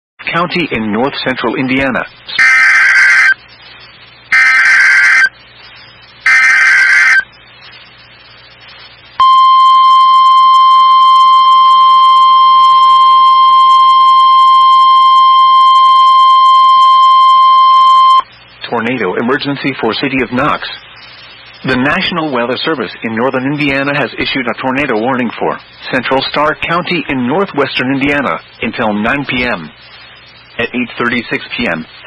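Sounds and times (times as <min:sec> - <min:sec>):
warbling data tones: 0:02.3 - 0:18.4
steady single-pitch alarm tone: 0:02.4 - 0:03.4, 0:04.3 - 0:05.3, 0:06.2 - 0:07.3, 0:09.2 - 0:18.3.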